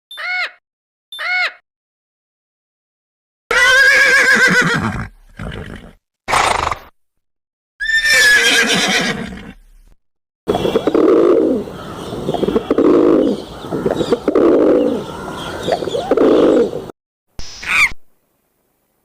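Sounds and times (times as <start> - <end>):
horse whinnying: 3.5 - 6.9, 7.8 - 9.8
pigeons cooing: 10.5 - 16.9.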